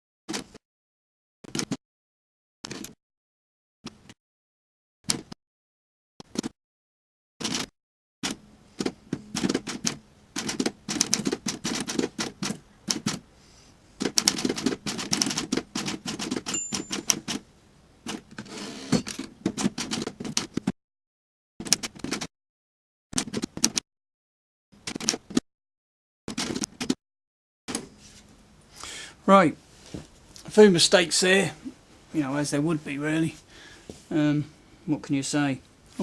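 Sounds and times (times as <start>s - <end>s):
typewriter keys clacking: 14.2s - 17.4s.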